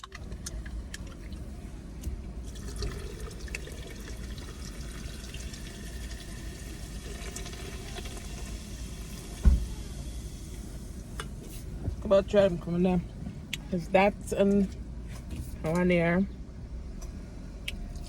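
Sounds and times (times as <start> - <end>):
low steady rumble: 0.0 - 18.0
liquid pouring into a cup: 2.4 - 9.2
sharp thump: 9.4 - 9.8.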